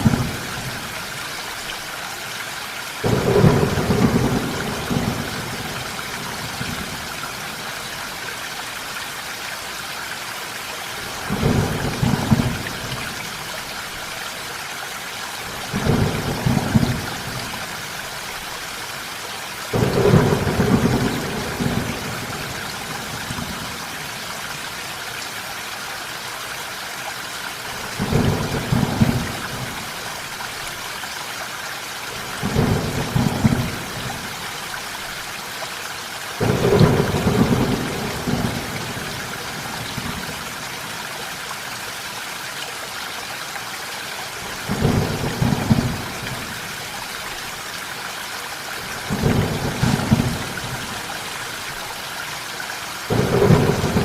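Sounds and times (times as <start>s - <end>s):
thunder rumbling: 0.0s - 1.0s, 3.0s - 7.0s, 19.7s - 23.6s, 36.4s - 39.2s, 44.7s - 46.6s, 49.1s - 51.0s, 53.1s - 54.0s
steady rain falling: 0.0s - 54.0s.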